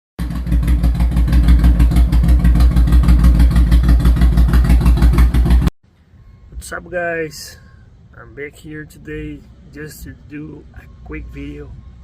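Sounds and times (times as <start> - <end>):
motorcycle engine idling: 0.2 - 5.7.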